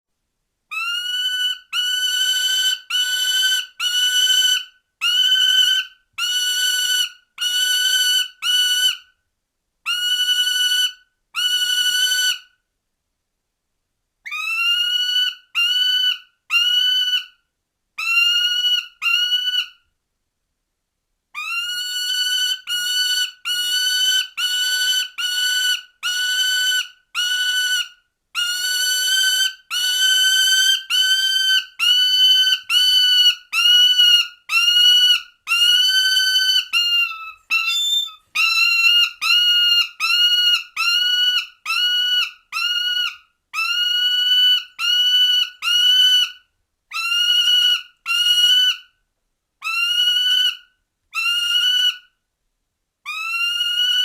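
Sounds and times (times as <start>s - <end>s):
falcon calling: 21.4s - 46.3s.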